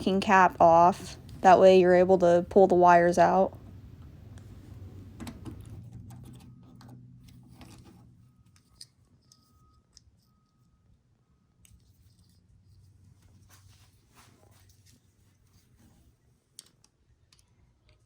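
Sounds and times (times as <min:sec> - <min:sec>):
low hum: 0:00.0 - 0:08.8.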